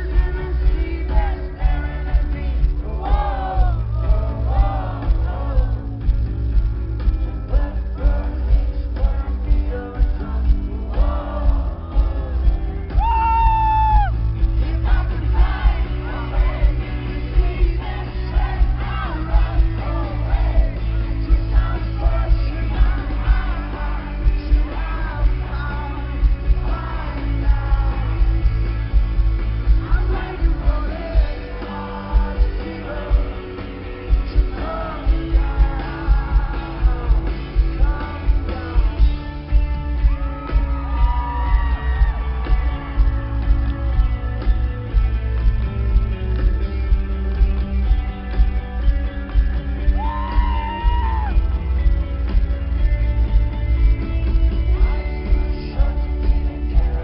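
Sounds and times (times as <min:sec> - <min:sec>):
loud held voice: 0:00.0 - 0:06.0, 0:09.1 - 0:14.1, 0:14.7 - 0:28.1
person singing: 0:00.0 - 0:06.3, 0:07.2 - 0:44.6, 0:53.2 - 0:57.0
live rock band playing: 0:00.0 - 0:57.0
shouts and yells: 0:12.8 - 0:14.3, 0:39.9 - 0:43.6, 0:49.8 - 0:51.6.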